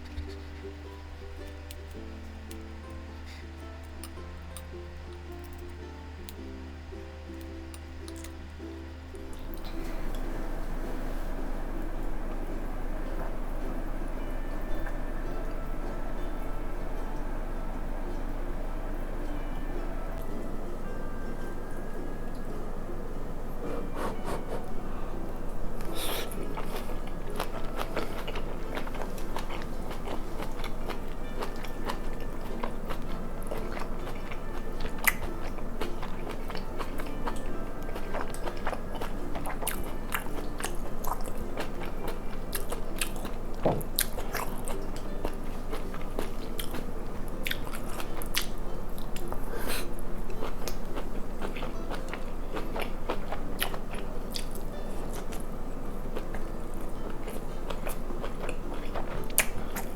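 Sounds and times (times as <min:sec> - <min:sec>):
person chewing crunchy food: 0:25.7 - 0:55.4, 0:56.1 - 0:59.9.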